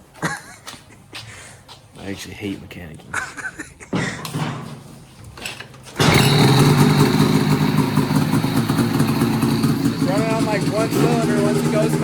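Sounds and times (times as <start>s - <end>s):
snowmobile engine idling: 6.0s - 12.0s.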